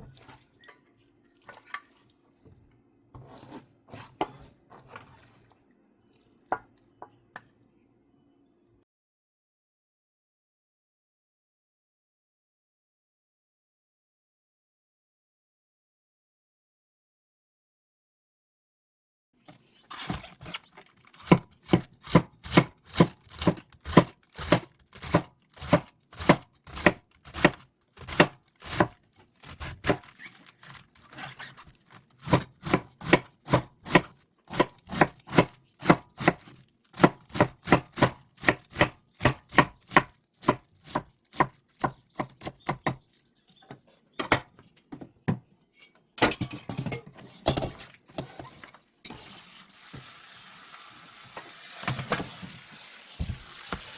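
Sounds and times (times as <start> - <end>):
knife chopping on cutting board: 3.2 - 4.5, 21.2 - 29.0, 32.2 - 36.4, 37.0 - 43.0.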